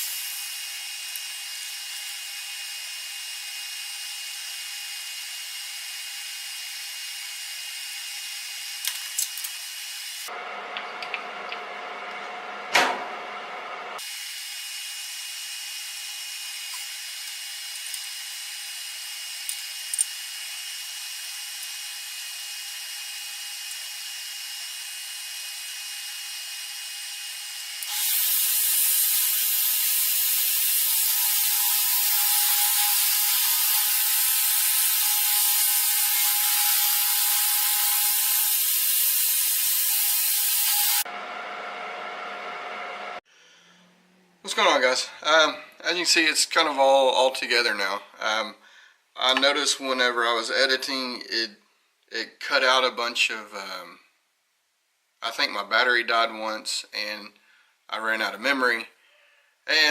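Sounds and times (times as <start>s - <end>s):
power tool motor whining: 14.0s - 43.2s.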